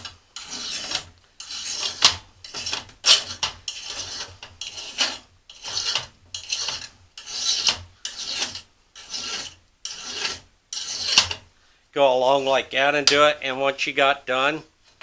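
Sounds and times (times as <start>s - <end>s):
hand file rasping on steel blade: 0.0s - 11.5s.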